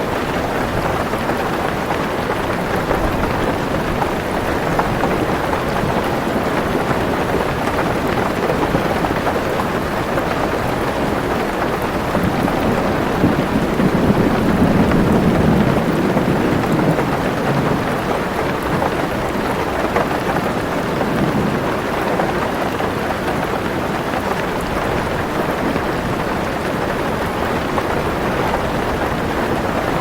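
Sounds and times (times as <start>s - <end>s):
heavy rain on car roof: 0.0s - 30.0s
thunder rolling: 11.9s - 19.3s.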